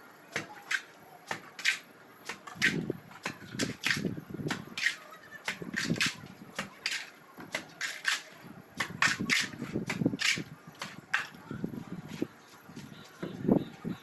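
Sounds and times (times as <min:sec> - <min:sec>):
trowel scraping and slapping mortar: 0:00.4 - 0:11.4.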